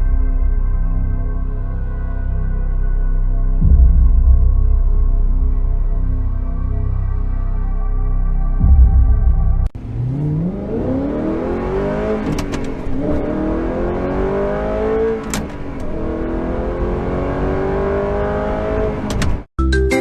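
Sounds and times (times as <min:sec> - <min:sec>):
car engine accelerating hard: 0:09.7 - 0:19.5.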